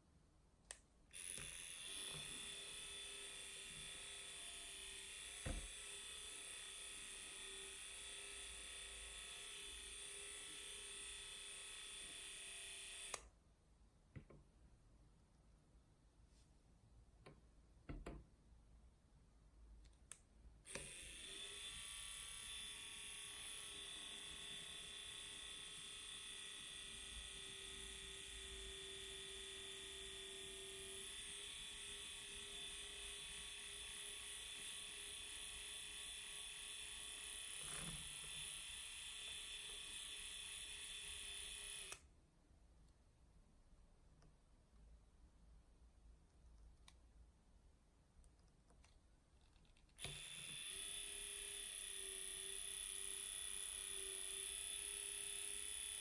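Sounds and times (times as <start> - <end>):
electric whisk motor buzzing: 1.1 - 13.2, 20.7 - 42.0, 50.0 - 56.0.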